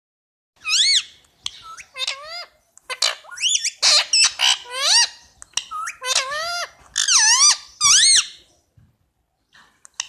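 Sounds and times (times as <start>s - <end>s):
parakeet squawks: 0.6s - 8.4s
parakeet chirping: 0.6s - 8.5s.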